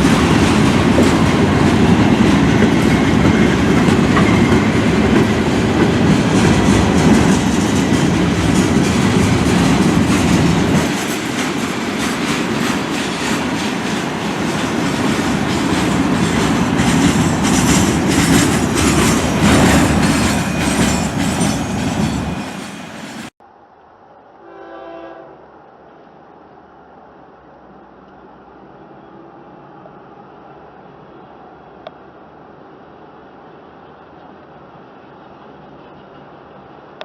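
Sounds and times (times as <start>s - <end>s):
train wheels rumbling on rail: 0.0s - 23.3s
wheels clacking over rail joints: 0.0s - 23.3s.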